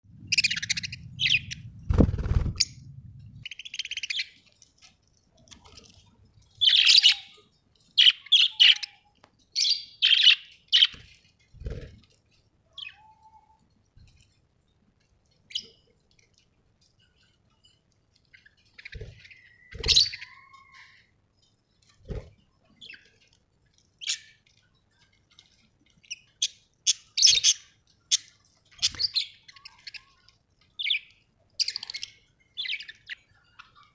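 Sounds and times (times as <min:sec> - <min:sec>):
budgerigars chirping and squawking: 0:00.2 - 0:01.7, 0:06.6 - 0:07.4, 0:08.0 - 0:09.0, 0:09.6 - 0:11.9, 0:18.4 - 0:21.0, 0:26.0 - 0:30.2, 0:30.8 - 0:33.9.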